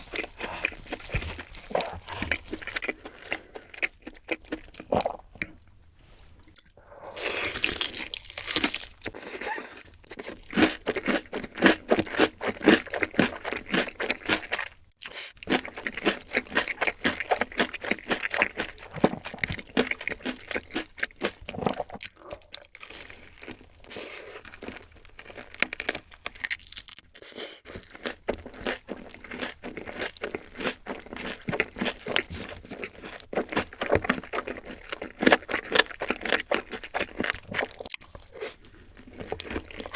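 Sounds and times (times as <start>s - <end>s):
person chewing crunchy fried food: 0.0s - 39.9s.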